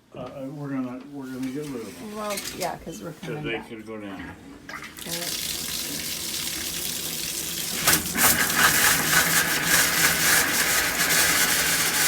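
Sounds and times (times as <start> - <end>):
tap water spitting and sputtering: 4.6 - 12.0.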